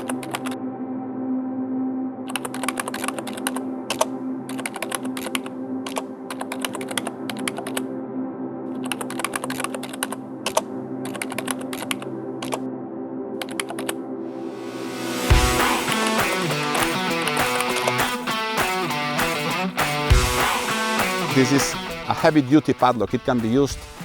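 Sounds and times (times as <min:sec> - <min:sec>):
ambient music drone: 0:00.0 - 0:22.1
computer keyboard typing: 0:02.3 - 0:07.8, 0:08.8 - 0:12.6, 0:13.4 - 0:14.0.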